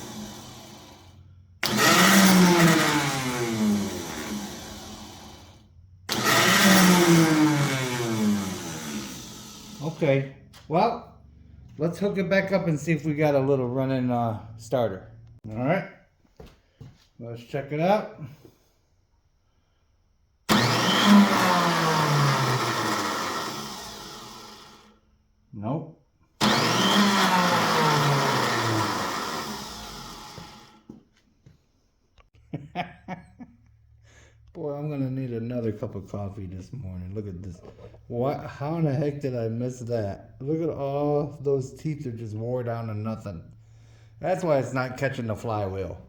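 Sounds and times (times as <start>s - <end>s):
starter motor whining: 0.0s - 10.2s, 20.5s - 24.9s, 26.4s - 31.0s.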